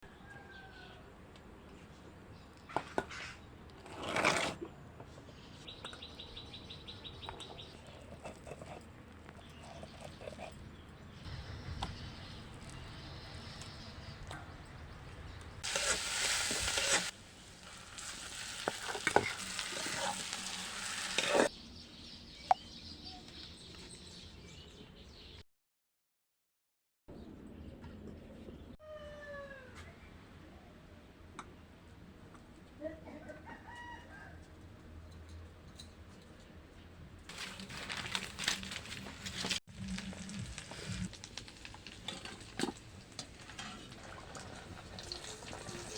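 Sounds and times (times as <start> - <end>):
hot oil sizzling: 15.6 - 21.5, 38.8 - 45.9
stirring and handling: 15.6 - 21.5, 37.3 - 45.9.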